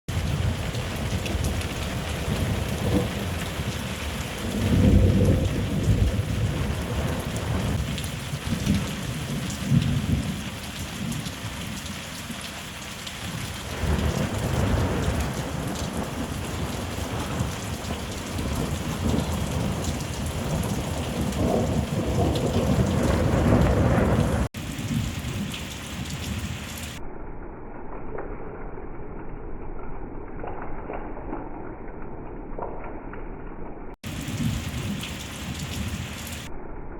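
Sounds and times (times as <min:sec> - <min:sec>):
thunder rolling: 0:00.1 - 0:11.9, 0:13.3 - 0:27.1, 0:34.0 - 0:36.6
heavy rain pouring: 0:00.1 - 0:27.0, 0:29.4 - 0:36.6.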